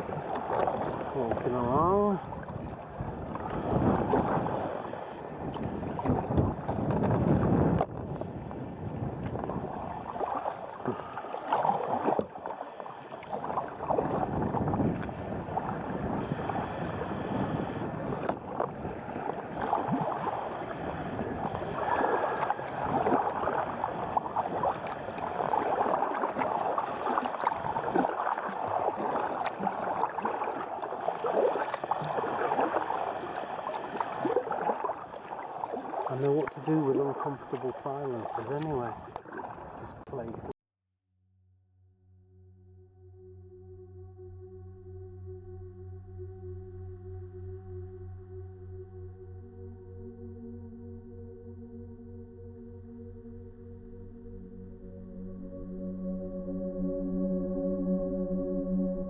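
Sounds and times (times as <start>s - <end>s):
water splashing around kayak: 0.0s - 40.5s.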